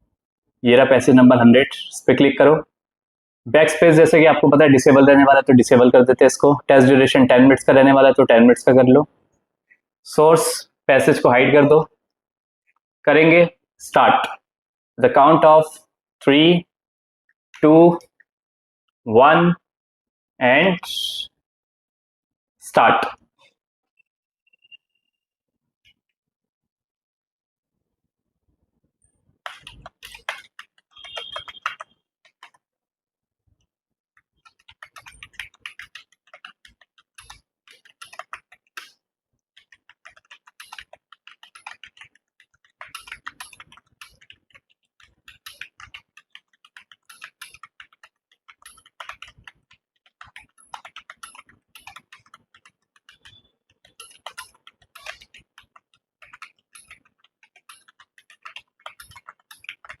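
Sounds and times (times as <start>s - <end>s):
fast typing on keyboard: 29.4s - 32.6s, 34.2s - 60.0s.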